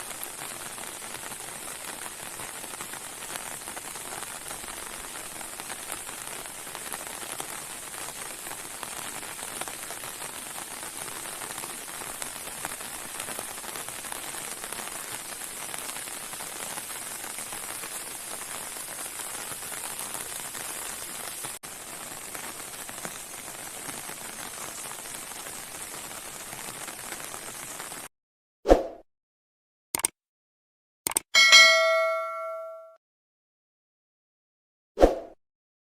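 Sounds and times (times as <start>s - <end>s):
steady rain falling: 0.0s - 28.1s.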